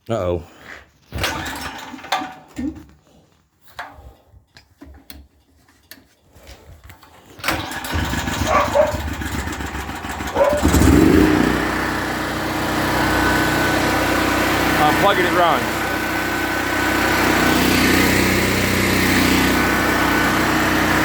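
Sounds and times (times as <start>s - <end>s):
generator engine running: 7.4s - 21.0s.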